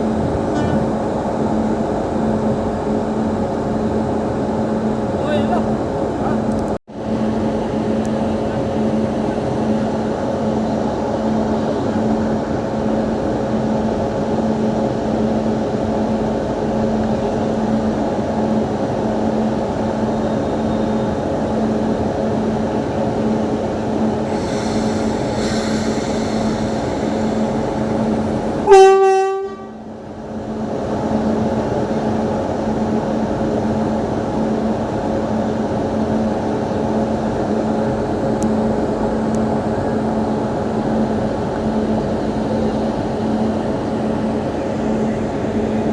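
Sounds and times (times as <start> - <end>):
locomotive machinery humming: 0.0 - 45.9
locomotive horn blast: 28.6 - 29.8.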